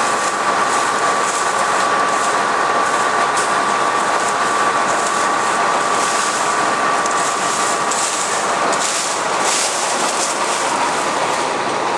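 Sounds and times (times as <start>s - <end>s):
forage harvester running: 0.0s - 11.9s.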